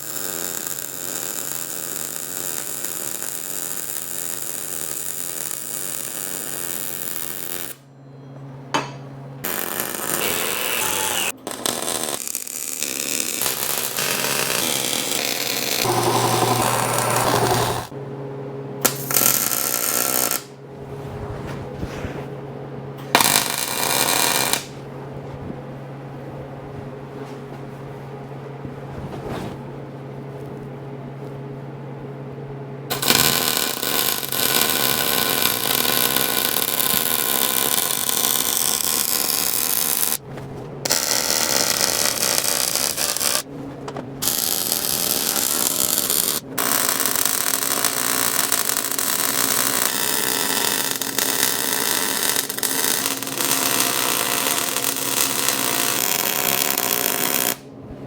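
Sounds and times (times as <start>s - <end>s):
welding arc crackle: 0.0s - 7.8s, 9.4s - 17.9s, 18.8s - 20.5s, 23.0s - 24.8s, 32.9s - 40.2s, 40.8s - 43.5s, 44.2s - 57.7s
welder humming: 0.0s - 7.9s, 8.7s - 18.0s, 18.8s - 20.6s, 23.0s - 24.9s, 32.9s - 40.2s, 40.8s - 57.7s.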